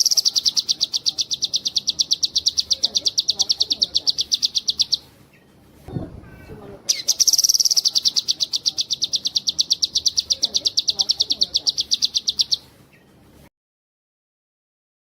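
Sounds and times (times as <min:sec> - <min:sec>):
songbird fast high trill: 0:00.0 - 0:05.1, 0:06.9 - 0:12.7.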